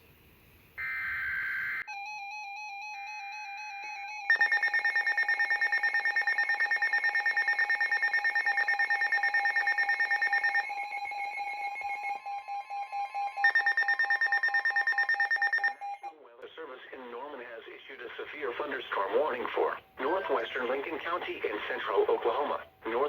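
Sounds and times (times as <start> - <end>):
weather radio alarm beeping: 4.3 - 16.3, 18.0 - 23.0.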